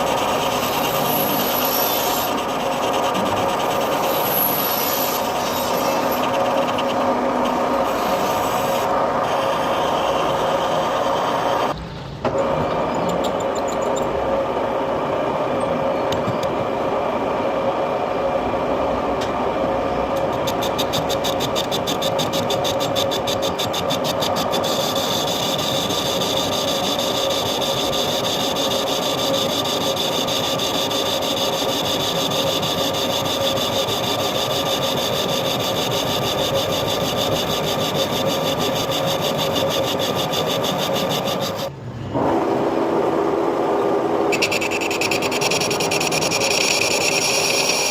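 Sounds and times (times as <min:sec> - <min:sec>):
metal lathe humming and whining: 0:00.0 - 0:11.8, 0:12.4 - 0:41.8, 0:44.3 - 0:47.9.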